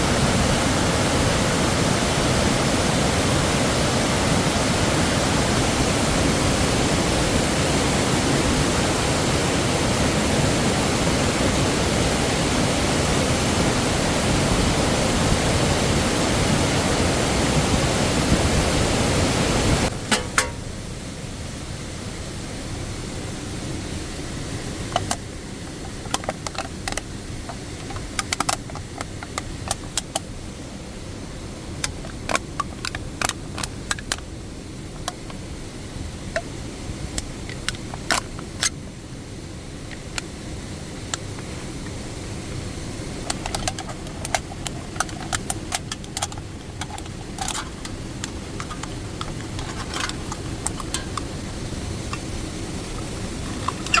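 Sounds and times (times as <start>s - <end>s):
sharp pops and crackles: 25.8s - 30.3s, 43.2s - 54.0s.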